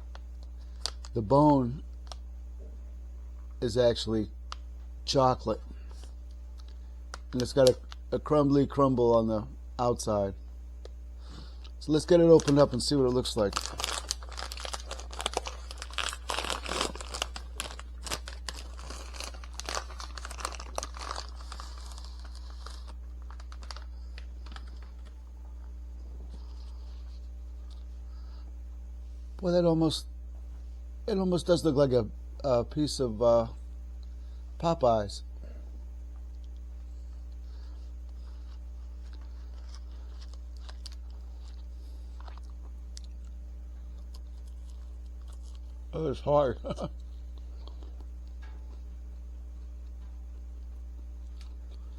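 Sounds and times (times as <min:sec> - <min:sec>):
steady low hum: 0:00.0 - 0:51.9
wrapper crackling: 0:11.8 - 0:25.2.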